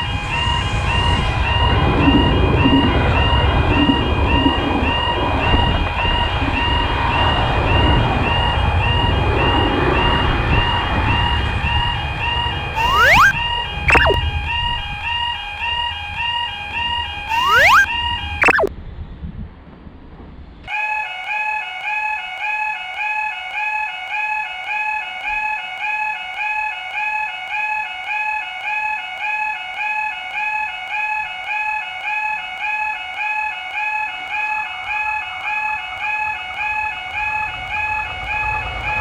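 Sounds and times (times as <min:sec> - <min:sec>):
electric train whine and rumble: 0:00.0 - 0:12.8, 0:36.5 - 0:39.0.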